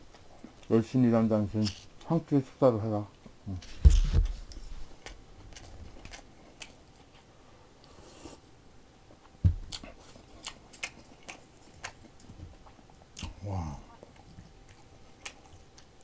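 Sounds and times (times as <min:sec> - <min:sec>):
person chewing crunchy food: 0:09.1 - 0:13.4, 0:14.1 - 0:16.0.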